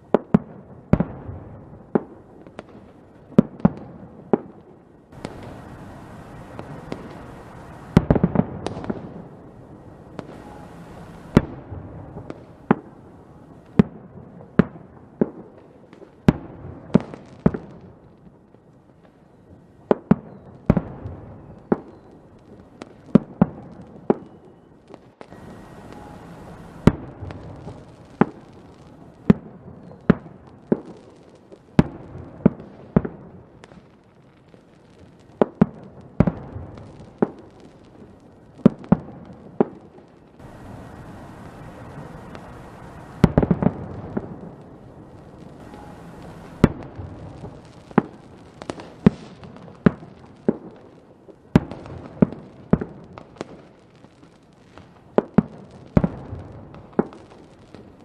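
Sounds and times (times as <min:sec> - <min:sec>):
fireworks bangs: 0:00.0 - 0:18.0, 0:19.1 - 0:58.0
fireworks hissing: 0:05.2 - 0:09.2, 0:09.8 - 0:11.5, 0:25.2 - 0:29.3, 0:40.4 - 0:49.4.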